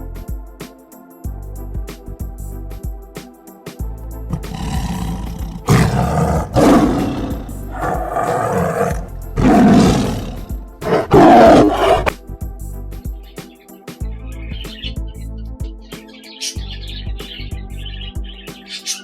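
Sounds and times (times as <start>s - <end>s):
background music: 0.0s - 19.0s
big cat roaring: 4.3s - 12.1s.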